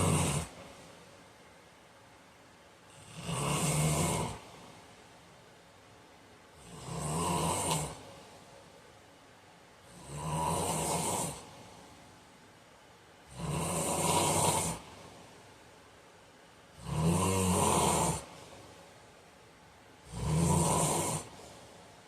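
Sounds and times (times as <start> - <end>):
man snoring: 0.0 - 0.6, 2.9 - 4.6, 6.6 - 8.1, 9.9 - 11.6, 13.3 - 14.9, 16.8 - 18.4, 20.0 - 21.6.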